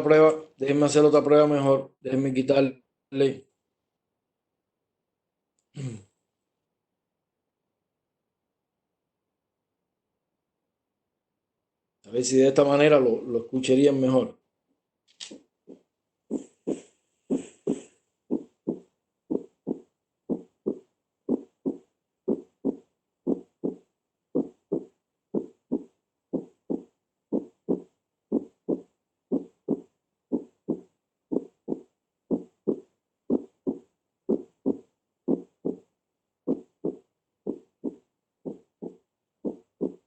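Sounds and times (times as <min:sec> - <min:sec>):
heartbeat lub-dub: 0:15.7 - 0:35.9, 0:36.5 - 0:40.0.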